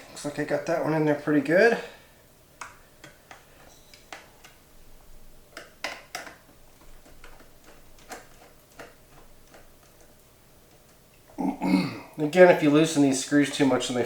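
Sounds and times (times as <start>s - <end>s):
screwdriver clicks and taps: 2.6s - 4.6s, 5.5s - 11.0s.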